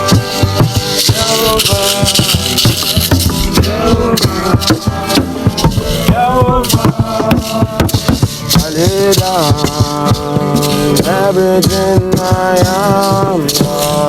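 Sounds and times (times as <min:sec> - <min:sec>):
percussion strikes: 0:00.0 - 0:14.0
shaker rattle: 0:00.0 - 0:14.0
gliding melody line: 0:00.9 - 0:09.0.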